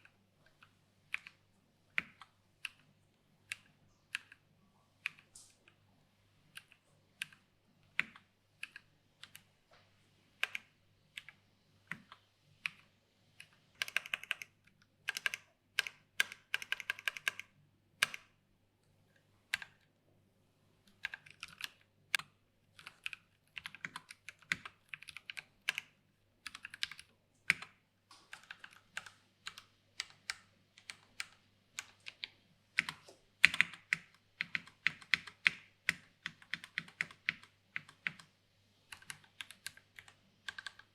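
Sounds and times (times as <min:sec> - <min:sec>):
mechanical keyboard typing: 0:06.5 - 0:09.5, 0:10.4 - 0:18.3, 0:20.9 - 0:38.3, 0:38.9 - 0:40.9.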